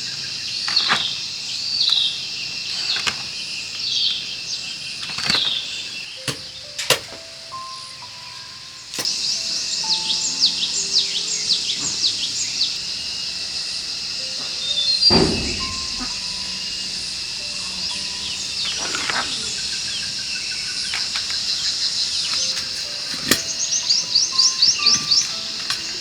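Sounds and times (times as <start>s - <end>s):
birds chirping: 0.0s - 26.0s
high insect drone: 0.0s - 26.0s
soft background music: 6.0s - 26.0s
rustling thump: 15.0s - 19.4s.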